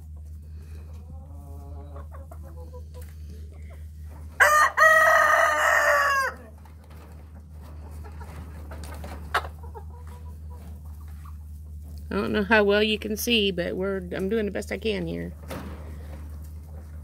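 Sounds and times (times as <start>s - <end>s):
rooster crowing: 4.4s - 6.5s.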